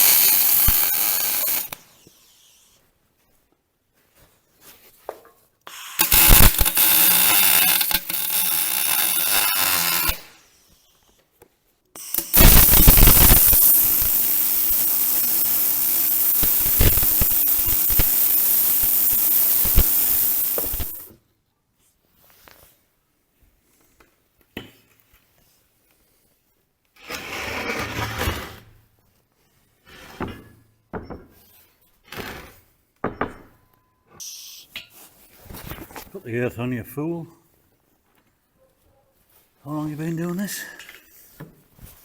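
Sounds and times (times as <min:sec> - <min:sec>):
welding arc crackling: 0:00.0 - 0:01.8, 0:05.7 - 0:10.4, 0:12.0 - 0:21.1.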